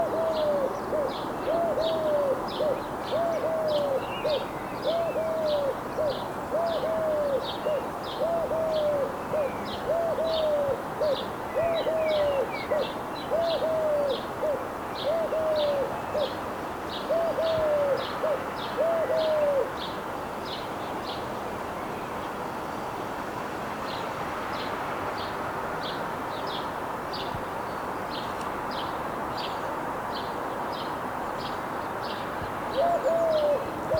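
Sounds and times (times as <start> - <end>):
dove cooing: 0.0 - 16.4, 17.1 - 19.7, 32.7 - 33.9.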